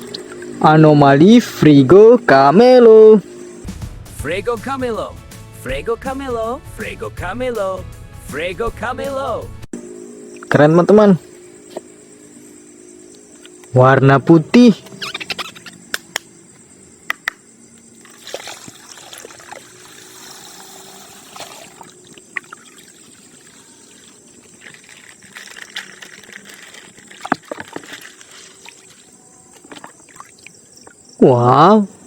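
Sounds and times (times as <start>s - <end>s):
sharp clicks and taps: 17.1s - 17.4s
water trickling and pouring: 18.0s - 31.0s.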